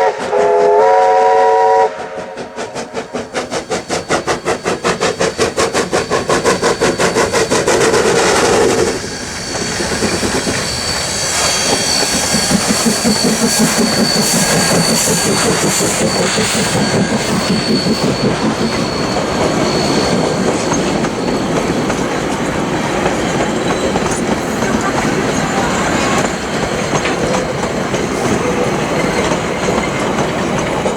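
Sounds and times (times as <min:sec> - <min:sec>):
steam locomotive exhaust beats: 0:00.0 - 0:30.9
train wheels clattering over rail joints: 0:02.3 - 0:30.9
thin high squeal: 0:03.4 - 0:26.3.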